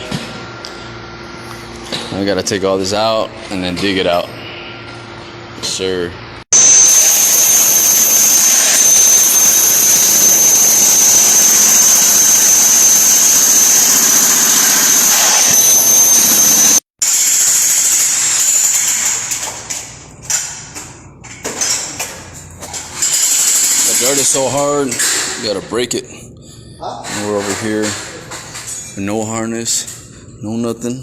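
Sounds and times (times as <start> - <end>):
electric jackhammer with high whine: 6.6 - 19.8, 22.9 - 24.6.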